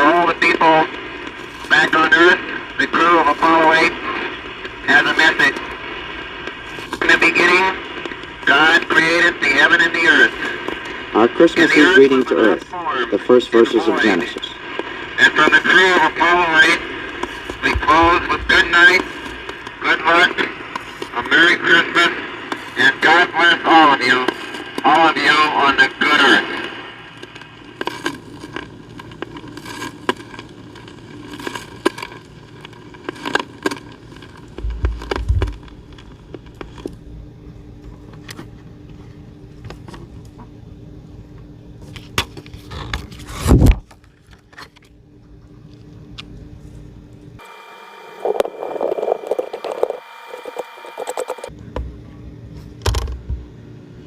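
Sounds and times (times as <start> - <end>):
muffled burst: 0.0 - 27.8
steady tones: 0.0 - 39.6
record crackling clicks and pops: 0.0 - 40.6, 41.3 - 52.0, 52.7 - 53.5
person speaking: 15.2 - 26.6.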